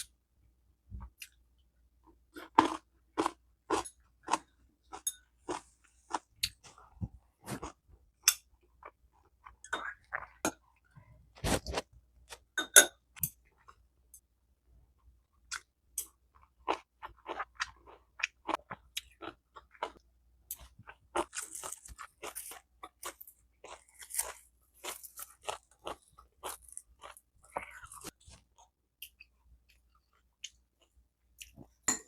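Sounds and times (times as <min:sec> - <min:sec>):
person chewing crunchy food: 0:02.3 - 0:12.6, 0:15.4 - 0:31.8.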